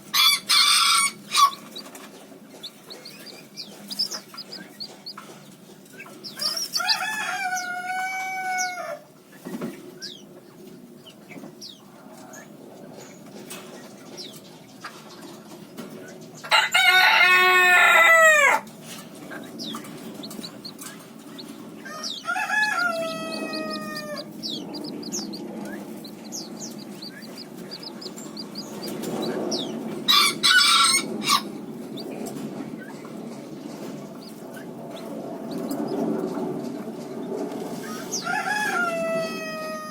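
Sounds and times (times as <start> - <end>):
rooster crowing: 0.1 - 1.6, 6.4 - 9.1, 16.5 - 18.7, 21.8 - 24.4, 30.1 - 31.5, 38.2 - 39.9.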